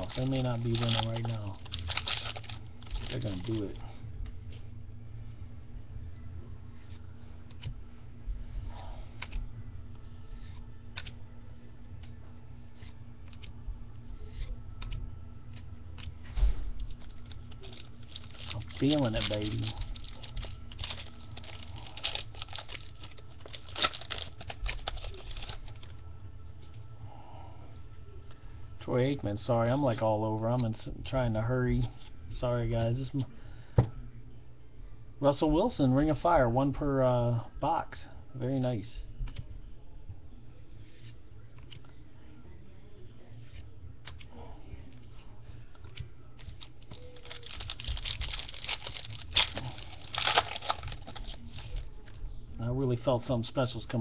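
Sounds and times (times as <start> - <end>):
pack wrapper crinkling: 0.0 - 3.8, 16.9 - 25.9, 46.4 - 52.0
trading cards clicking and rustling: 0.0 - 3.8, 15.6 - 26.0, 45.8 - 52.2.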